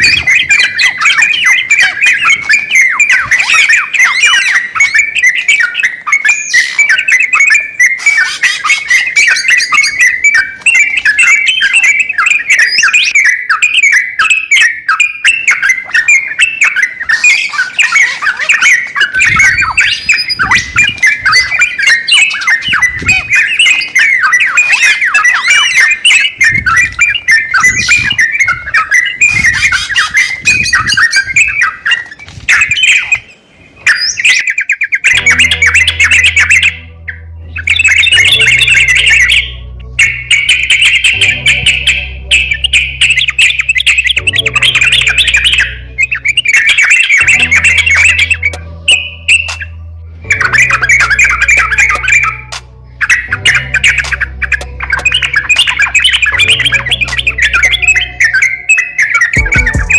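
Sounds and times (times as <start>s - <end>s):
songbird chattering song: 0.0s - 59.9s
low thumps: 59.4s - 59.9s.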